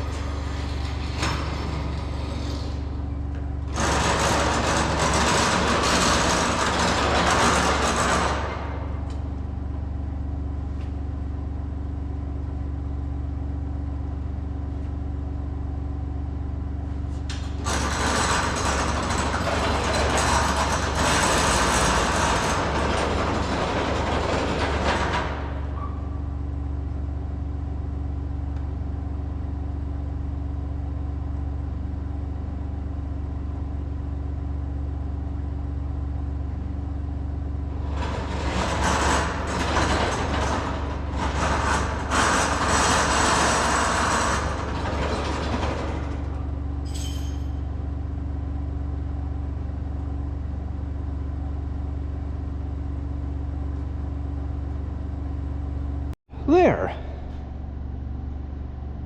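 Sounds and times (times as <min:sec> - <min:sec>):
loud rough noise: 0:00.0 - 0:09.0, 0:17.5 - 0:25.7
vehicle engine running: 0:00.0 - 0:17.7, 0:46.4 - 0:59.0.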